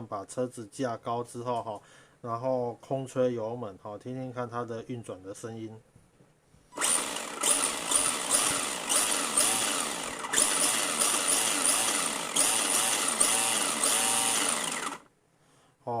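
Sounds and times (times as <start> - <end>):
electric motor whining: 6.8 - 15.1.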